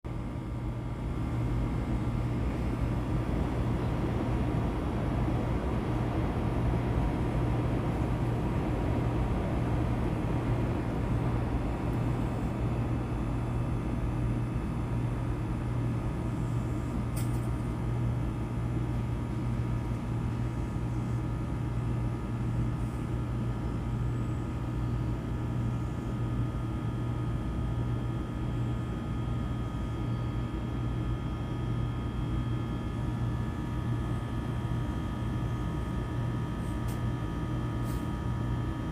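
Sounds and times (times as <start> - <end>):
street ambience hum: 0.1 - 38.9.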